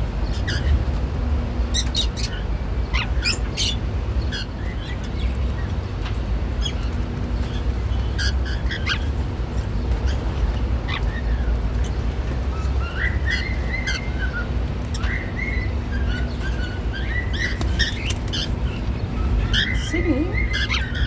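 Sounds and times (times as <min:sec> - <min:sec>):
low background hum: 0:00.0 - 0:21.0
cockatiels chirping: 0:01.7 - 0:21.0
warbling whistled bird song: 0:10.8 - 0:21.0.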